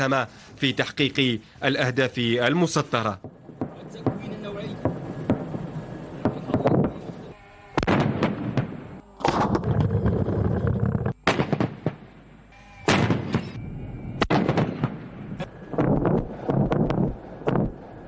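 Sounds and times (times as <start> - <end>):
explosions with rolling echo: 3.2 - 9.8, 11.2 - 12.3, 12.9 - 13.6, 14.2 - 18.0
gunshots: 3.2 - 9.8, 11.2 - 12.1, 12.9 - 13.6, 14.2 - 17.8.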